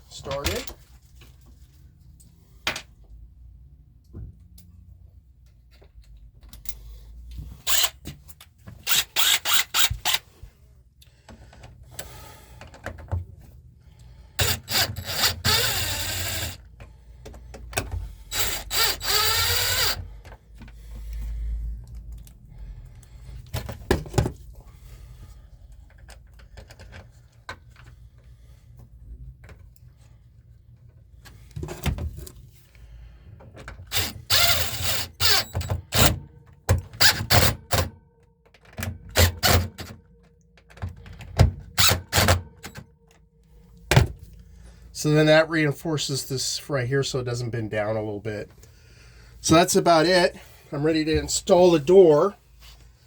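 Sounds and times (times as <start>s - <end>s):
power drill driving screws: 7.6s - 8.0s, 8.8s - 10.3s, 14.4s - 16.7s, 18.3s - 20.1s, 33.9s - 36.2s, 37.0s - 37.9s, 39.1s - 39.9s, 41.8s - 42.8s.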